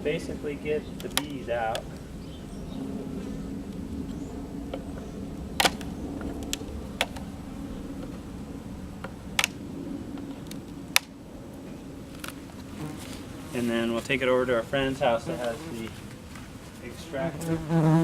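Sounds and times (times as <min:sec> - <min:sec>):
bees buzzing: 0:17.1 - 0:18.0.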